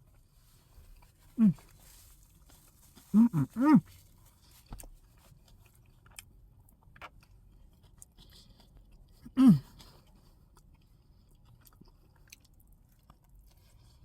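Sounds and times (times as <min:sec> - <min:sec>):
person chewing: 0:00.2 - 0:14.0
person humming mm: 0:01.4 - 0:01.6, 0:03.1 - 0:03.8.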